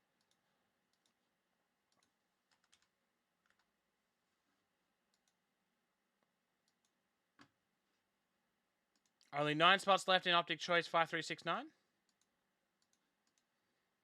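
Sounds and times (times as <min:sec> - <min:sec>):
computer mouse clicks: 0:00.2 - 0:01.2, 0:01.9 - 0:03.7, 0:05.1 - 0:05.4, 0:06.2 - 0:07.6, 0:08.9 - 0:09.3, 0:12.0 - 0:13.5.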